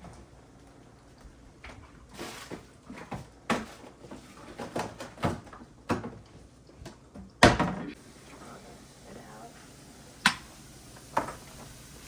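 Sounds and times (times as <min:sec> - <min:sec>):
items being set down: 0:01.7 - 0:06.2.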